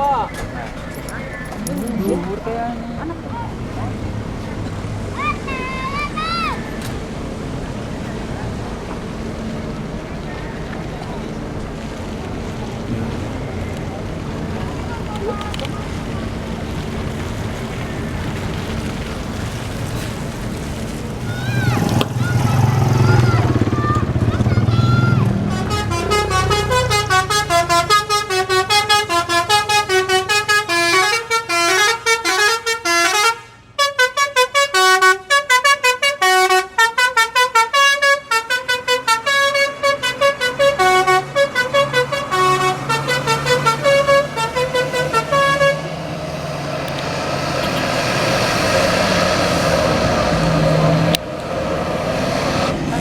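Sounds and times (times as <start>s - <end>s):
vehicle noise: 0.0s - 53.0s
musical bus horn melody: 24.6s - 46.8s.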